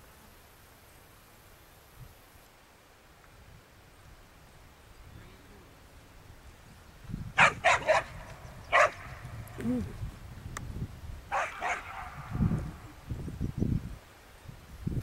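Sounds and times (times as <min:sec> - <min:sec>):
dog barking: 0:07.4 - 0:09.0, 0:11.3 - 0:12.2.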